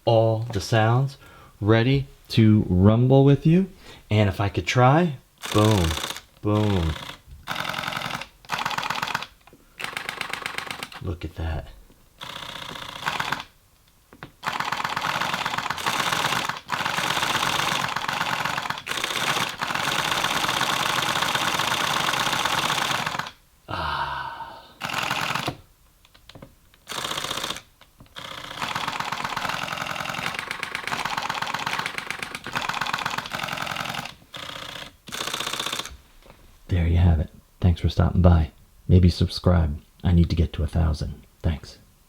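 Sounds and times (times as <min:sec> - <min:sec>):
camera shutter bursts: 0:05.4 - 0:11.0, 0:14.4 - 0:23.4, 0:26.8 - 0:36.0.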